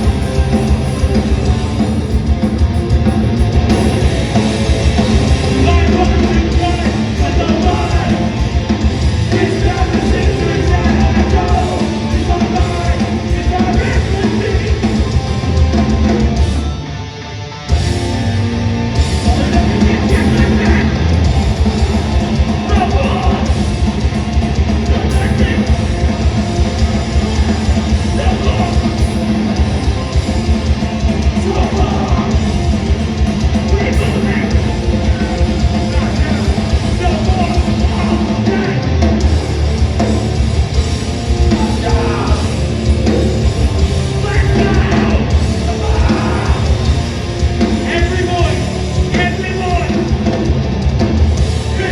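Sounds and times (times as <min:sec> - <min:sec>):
punk vocals: 0:00.0 - 0:16.8, 0:17.7 - 0:51.9
distorted guitars: 0:00.0 - 0:51.9
drums: 0:00.0 - 0:51.9.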